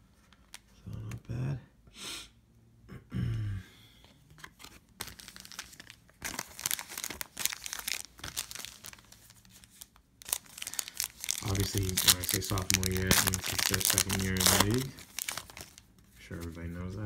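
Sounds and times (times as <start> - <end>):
wrapper tearing and crinkling: 5.0 - 15.9.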